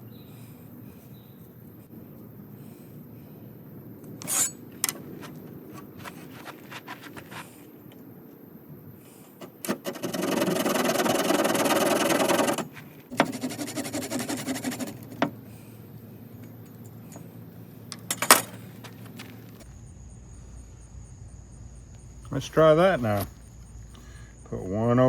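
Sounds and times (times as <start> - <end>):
wood being cut and scraped: 4.2 - 7.6, 9.7 - 15.4.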